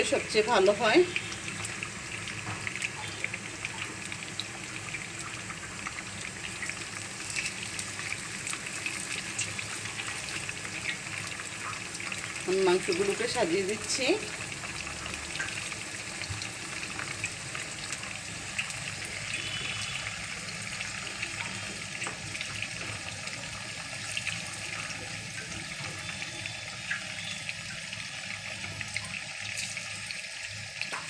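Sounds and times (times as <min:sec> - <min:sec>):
chicken deep-frying in hot oil: 0:00.0 - 0:31.0
oil crackling and popping: 0:00.0 - 0:31.0.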